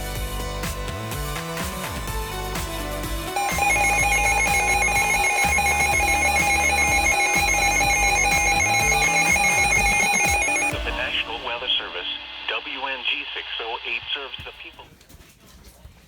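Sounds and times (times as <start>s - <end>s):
electronic two-tone alarm: 3.4s - 12.2s.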